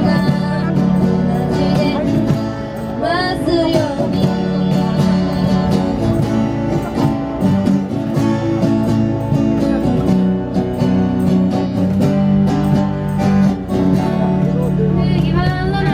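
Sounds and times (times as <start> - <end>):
person singing: 0.0 - 7.0
acoustic guitar strumming: 0.0 - 15.9.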